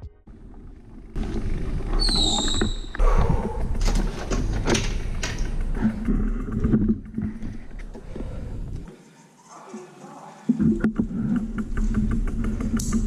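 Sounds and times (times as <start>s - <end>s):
bicycle rattling and knocking: 1.2s - 8.7s
high squeak: 2.0s - 3.0s.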